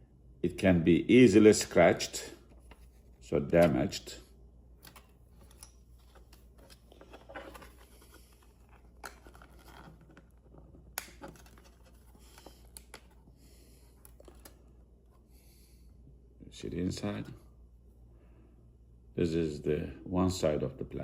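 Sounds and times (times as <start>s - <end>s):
plastic rustling and scraping: 5.0s - 13.3s.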